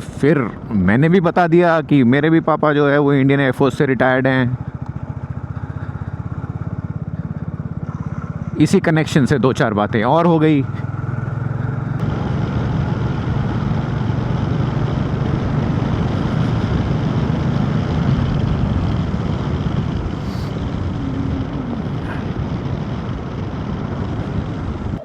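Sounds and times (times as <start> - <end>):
motorcycle engine running: 0.0 - 25.0
wind rush on microphone: 12.0 - 25.0.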